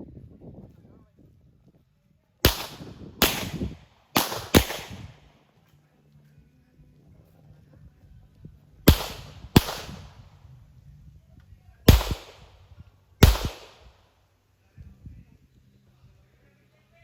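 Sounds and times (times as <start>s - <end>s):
pistol shots with echo: 2.4s - 5.4s, 8.9s - 10.4s, 11.9s - 14.2s.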